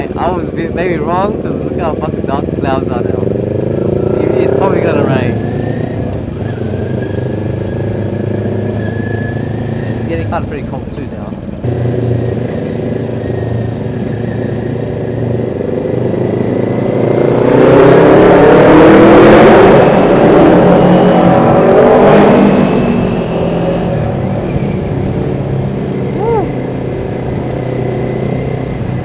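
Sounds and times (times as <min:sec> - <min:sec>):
motorcycle engine revving: 0:00.0 - 0:10.5, 0:11.4 - 0:29.0.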